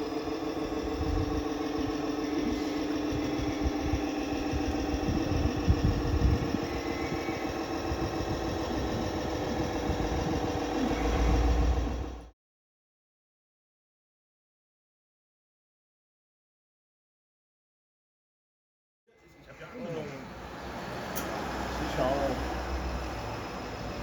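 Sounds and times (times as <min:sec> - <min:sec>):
engine-like drone: 0:00.0 - 0:12.3, 0:19.4 - 0:24.0
low rumbling: 0:00.0 - 0:12.3.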